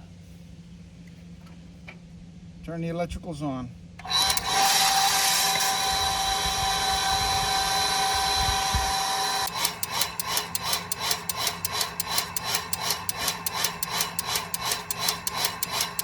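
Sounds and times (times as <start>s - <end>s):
well pump whining and rasping: 4.0s - 16.0s.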